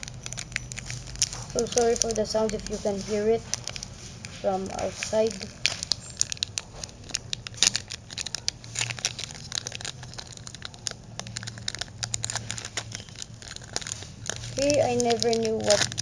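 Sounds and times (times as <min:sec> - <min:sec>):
foil wrapper crinkling and tearing: 0:00.0 - 0:16.0.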